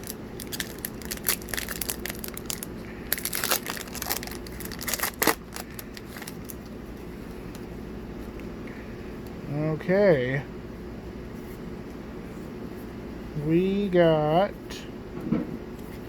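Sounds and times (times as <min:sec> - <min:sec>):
plastic wrapper crinkling and tearing: 0:00.0 - 0:06.6.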